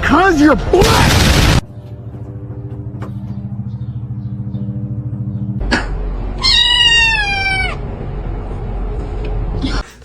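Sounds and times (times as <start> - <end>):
cat meowing: 6.4 - 7.8.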